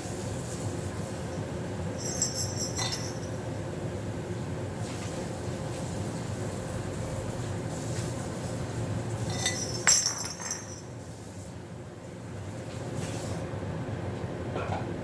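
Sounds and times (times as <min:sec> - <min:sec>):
dishes clinking: 0:02.0 - 0:03.4, 0:09.2 - 0:10.9.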